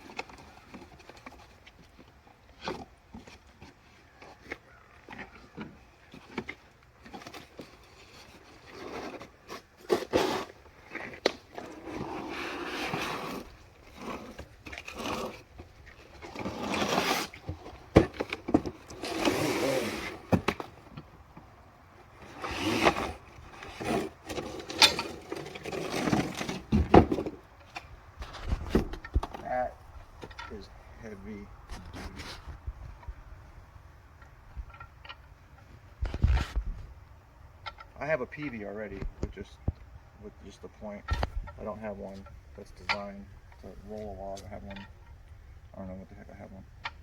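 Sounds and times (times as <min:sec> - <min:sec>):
cardboard box tearing: 0:07.1 - 0:15.5, 0:16.2 - 0:20.7, 0:22.2 - 0:27.3.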